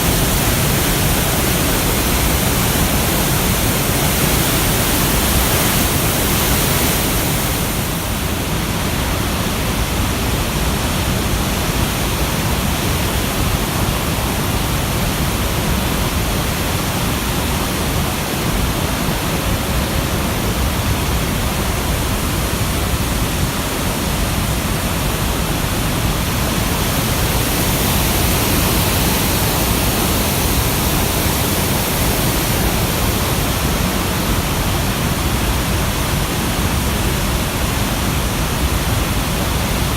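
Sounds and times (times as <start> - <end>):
flooded river rushing: 0.0 - 39.9.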